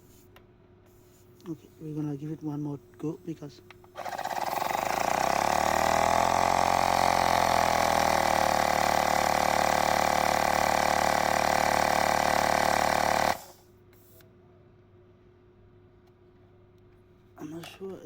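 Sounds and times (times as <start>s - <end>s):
electric tyre inflator running: 4.0s - 13.6s.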